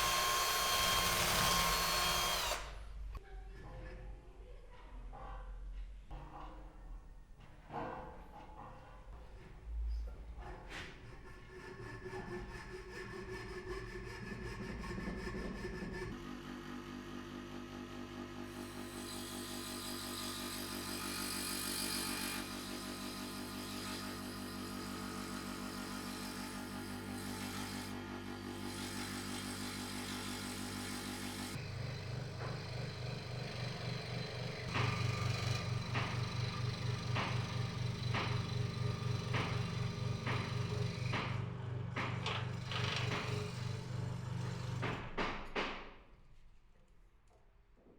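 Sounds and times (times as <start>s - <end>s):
electric power tool cutting wood: 0.0s - 2.8s, 18.5s - 45.0s.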